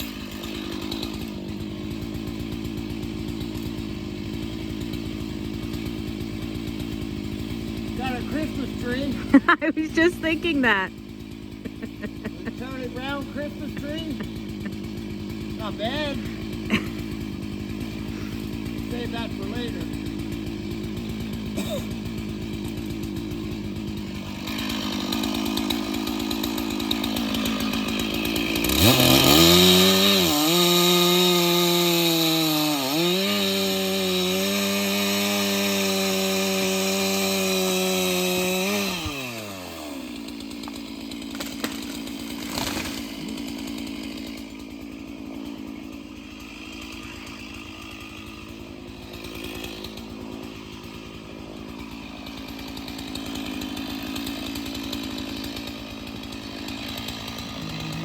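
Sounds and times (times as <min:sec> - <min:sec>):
chainsaw idling and revving: 0:00.0 - 0:58.0.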